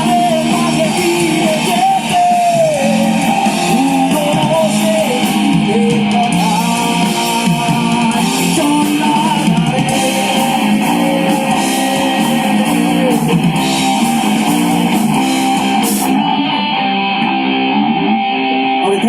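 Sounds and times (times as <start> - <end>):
electric guitars playing riff: 0.0 - 19.0
live rock band: 0.0 - 19.0.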